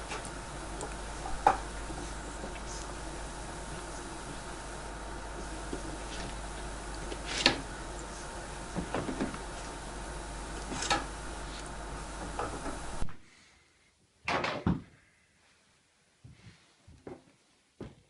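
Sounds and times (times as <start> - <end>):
steady background hiss: 0.0 - 14.2.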